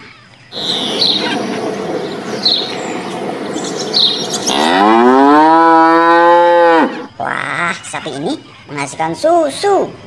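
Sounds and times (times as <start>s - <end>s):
short bird chirps: 0.0s - 4.8s
cow mooing: 4.2s - 7.1s.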